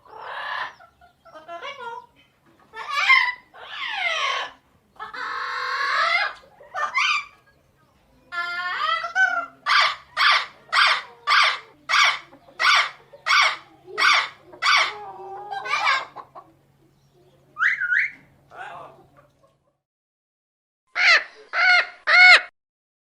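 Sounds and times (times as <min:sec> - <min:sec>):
parrot squawking: 0:00.0 - 0:02.0, 0:02.7 - 0:07.4, 0:08.3 - 0:16.2, 0:17.6 - 0:19.0, 0:21.0 - 0:22.5.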